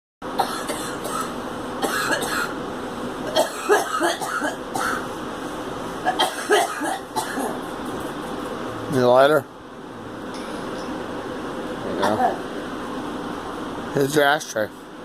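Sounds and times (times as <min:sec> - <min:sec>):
girl coughing: 0:00.4 - 0:02.6, 0:03.3 - 0:05.1, 0:06.0 - 0:07.6, 0:12.0 - 0:12.4.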